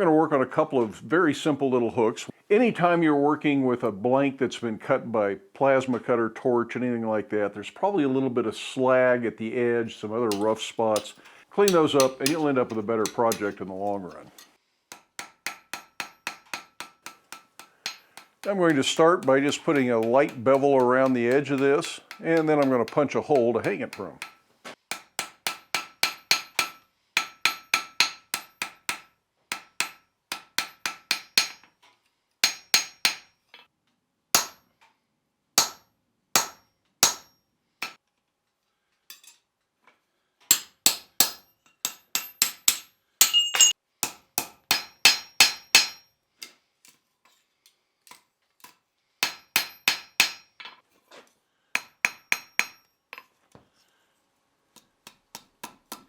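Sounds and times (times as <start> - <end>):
hammer striking steel on anvil: 10.3 - 13.6, 14.4 - 31.7, 32.4 - 33.3, 34.4 - 34.6, 35.6 - 38.0, 40.5 - 46.1, 49.2 - 50.6, 51.8 - 52.9.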